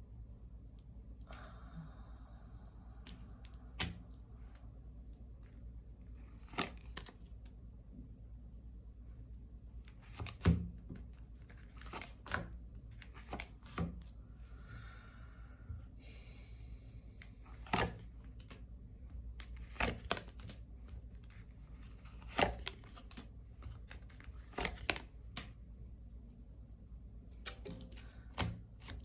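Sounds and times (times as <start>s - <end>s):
cards rustling: 5.4s - 7.5s, 9.8s - 14.1s, 17.4s - 18.6s, 19.3s - 25.5s, 27.3s - 29.0s.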